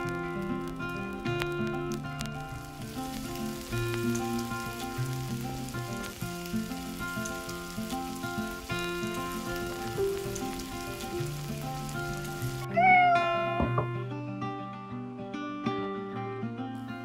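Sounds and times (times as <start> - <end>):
food frying sizzle: 0.0 - 12.9
background music melody: 0.0 - 17.0.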